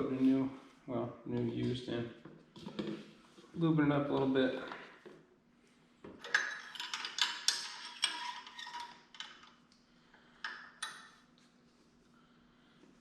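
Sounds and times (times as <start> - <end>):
metal engine parts clinking: 6.2 - 9.5.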